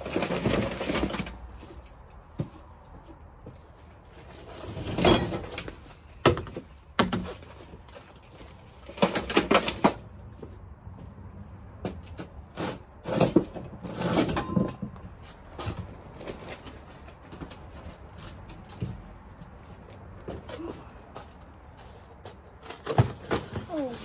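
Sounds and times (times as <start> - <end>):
objects knocking and clattering: 11.8 - 16.0, 22.6 - 24.0.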